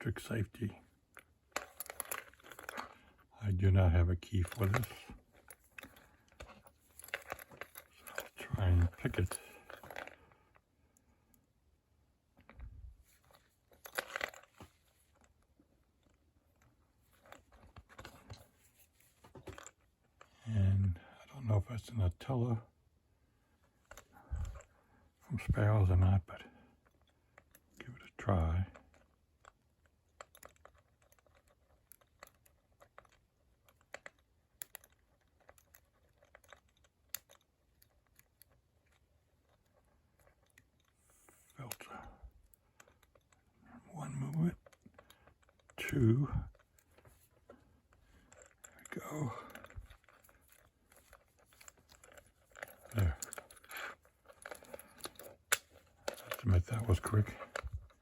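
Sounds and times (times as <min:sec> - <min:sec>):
lock picking metallic clicks: 0:28.8 - 0:43.4, 0:44.2 - 0:58.0
crinkly rustles: 0:46.6 - 0:58.0.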